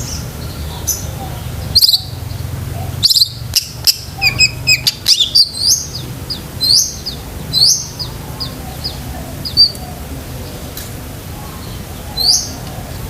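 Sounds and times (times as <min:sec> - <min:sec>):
shrike singing chirps and whistles: 0:00.0 - 0:09.8.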